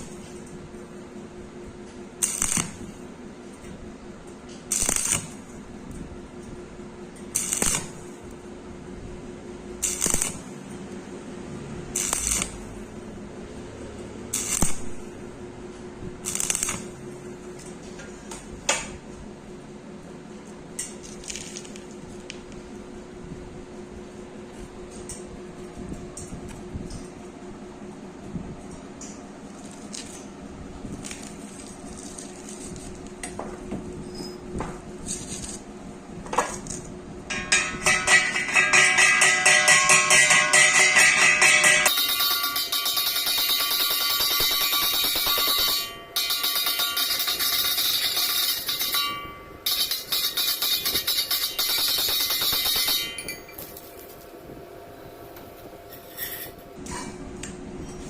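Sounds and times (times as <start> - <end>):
steady hum: 0.0 - 58.0
welding arc crackling: 2.2 - 3.2, 4.6 - 5.8, 7.2 - 8.5, 9.6 - 13.0, 14.2 - 15.4, 16.2 - 17.1, 37.8 - 54.4.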